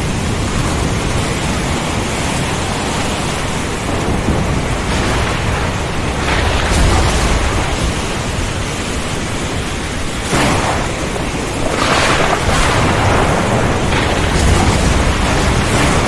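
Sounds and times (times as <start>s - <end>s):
heavy rain: 0.0s - 16.0s
low thunder rumble: 0.0s - 16.0s
wind: 0.0s - 16.0s.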